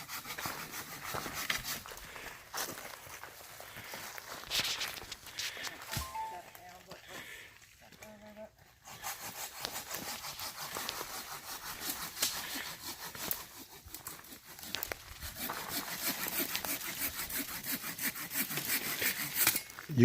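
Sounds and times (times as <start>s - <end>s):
hand saw cutting wood: 0.0s - 2.2s, 8.7s - 19.8s.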